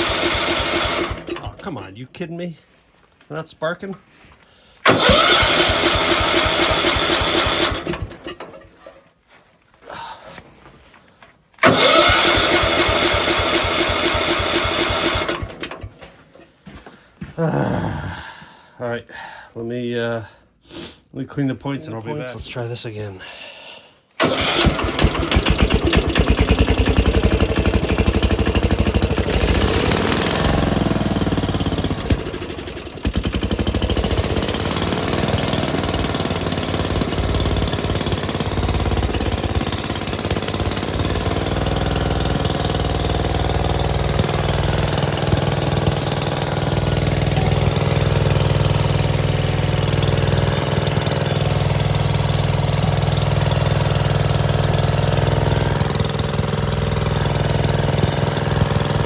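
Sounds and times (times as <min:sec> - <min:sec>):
tractor engine running: 0:00.0 - 0:01.9, 0:04.8 - 0:09.0, 0:11.6 - 0:16.4, 0:24.2 - 0:59.0.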